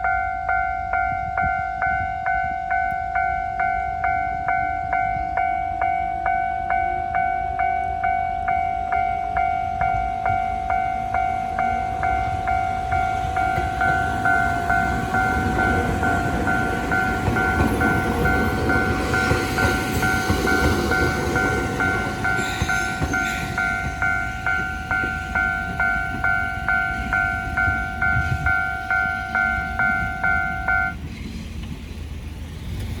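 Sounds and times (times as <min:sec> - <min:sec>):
level crossing bell clanging: 0:00.0 - 0:31.0
electric train running: 0:09.3 - 0:33.0.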